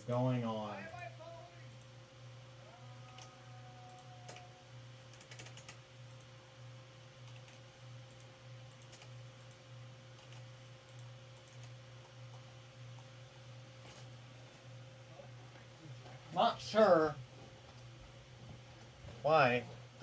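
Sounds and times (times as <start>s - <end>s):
faint clicks: 3.0s - 4.5s.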